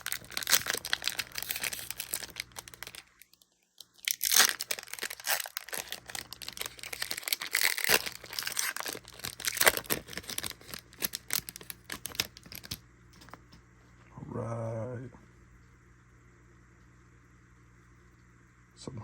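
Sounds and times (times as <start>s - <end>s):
wrapper tearing and crinkling: 0.0s - 13.4s.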